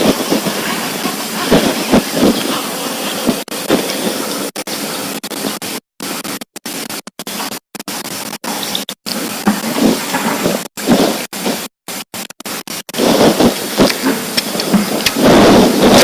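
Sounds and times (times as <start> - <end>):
rain hissing on microphone: 0.0 - 16.0.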